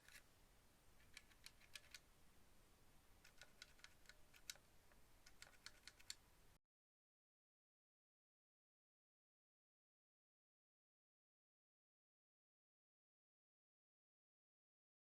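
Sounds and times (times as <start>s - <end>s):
faint mechanical keyboard keystrokes: 1.0s - 2.0s, 3.2s - 4.6s, 5.2s - 6.2s.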